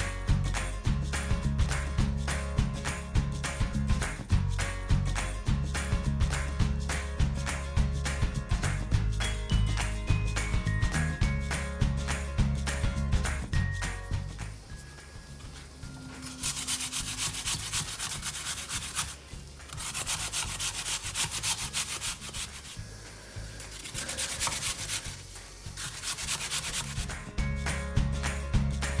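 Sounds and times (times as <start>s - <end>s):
hand scraping strokes: 14.5s - 27.4s.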